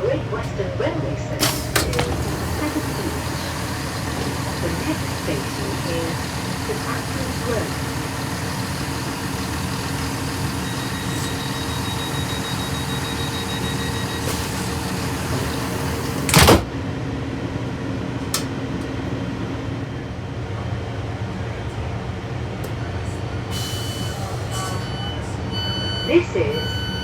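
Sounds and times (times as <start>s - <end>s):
train diesel engine drone: 0.0s - 27.0s.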